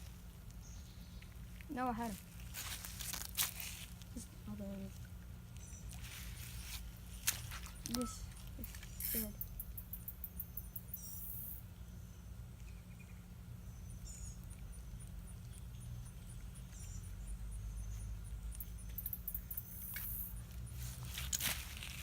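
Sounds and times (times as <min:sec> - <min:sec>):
low outdoor rumble: 0:00.0 - 0:22.0
insect chirping high-pitched: 0:07.6 - 0:11.6, 0:16.8 - 0:20.6.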